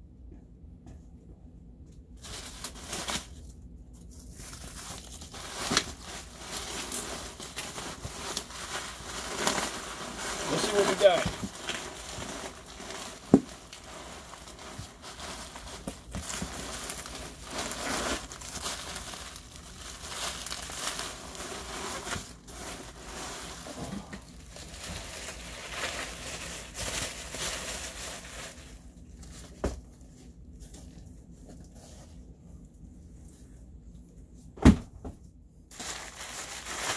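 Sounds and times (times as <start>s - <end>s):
bubble wrap crinkling: 2.2s - 33.4s, 35.7s - 36.9s.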